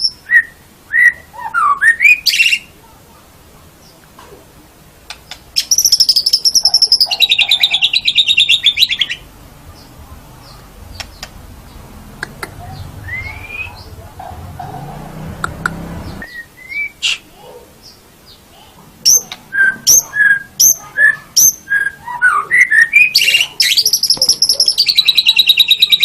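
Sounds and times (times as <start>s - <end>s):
sharp clicks: 5.1s - 5.5s, 11.0s - 11.4s
bird singing fast trill: 5.2s - 11.9s, 12.6s - 14.0s, 19.0s - 26.0s.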